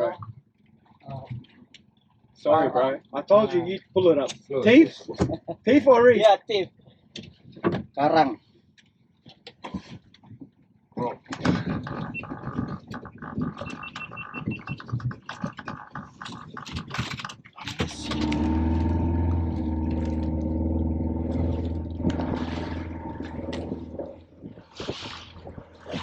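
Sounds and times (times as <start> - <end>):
synthesizer chord over heavy bass: 18.0 - 24.3.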